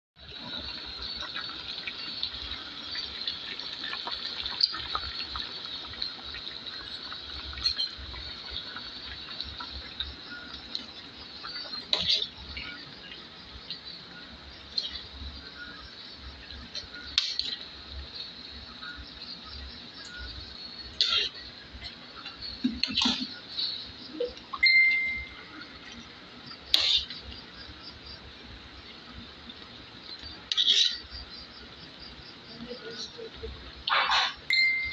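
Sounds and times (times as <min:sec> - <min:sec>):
utensils clinking on cookware: 0:07.4 - 0:08.0, 0:11.6 - 0:12.3, 0:21.0 - 0:22.0, 0:26.8 - 0:27.2, 0:30.5 - 0:31.1.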